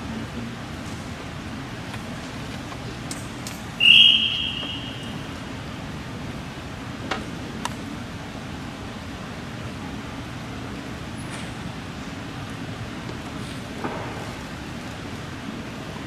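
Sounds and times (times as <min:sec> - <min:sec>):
high-pitched whistle-like tone: 0:03.8 - 0:05.2.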